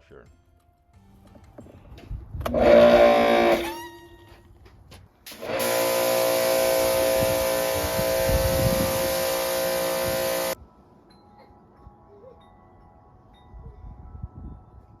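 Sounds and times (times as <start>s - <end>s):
pressure washer motor and pump whine: 2.5s - 3.8s, 5.3s - 10.6s
water spray hissing: 5.3s - 10.6s.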